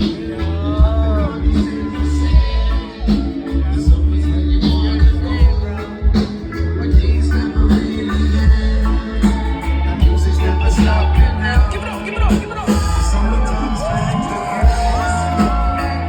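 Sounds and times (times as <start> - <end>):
live reggae rock band: 0.0 - 16.0
person singing: 0.0 - 16.0.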